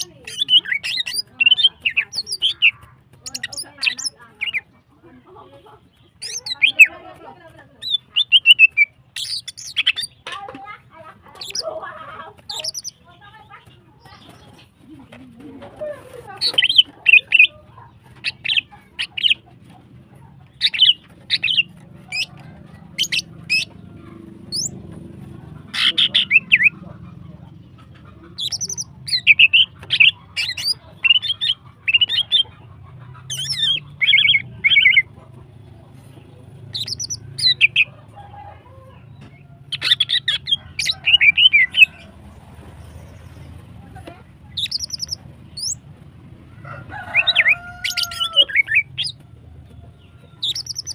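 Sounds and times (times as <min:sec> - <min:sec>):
bird chirping and trilling: 0:00.0 - 0:04.7, 0:05.9 - 0:07.0, 0:07.8 - 0:10.3, 0:11.3 - 0:11.8, 0:12.5 - 0:13.1, 0:16.4 - 0:17.6, 0:18.2 - 0:19.4, 0:20.5 - 0:24.8, 0:25.7 - 0:26.8, 0:28.4 - 0:32.5, 0:33.2 - 0:35.1, 0:36.7 - 0:37.9, 0:39.7 - 0:42.1, 0:44.5 - 0:45.8, 0:47.0 - 0:49.2, 0:50.3 - 0:50.9.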